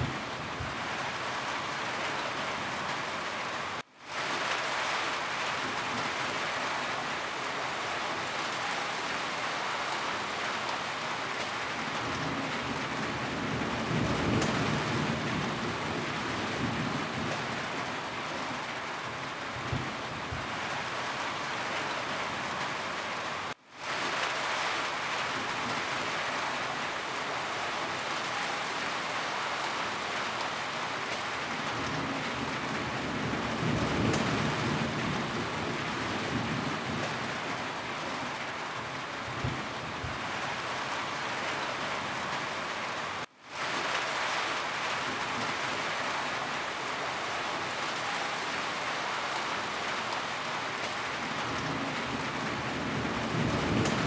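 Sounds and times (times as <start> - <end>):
heavy rain on a roof: 0.0 - 54.0
low rumble of thunder: 11.9 - 17.9, 31.6 - 37.6, 51.2 - 54.0.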